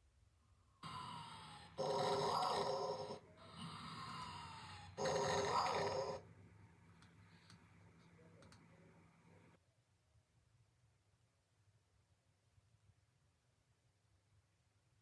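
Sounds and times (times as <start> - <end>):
faint low hum: 0.1 - 13.0
person snoring with whistle: 0.8 - 6.2.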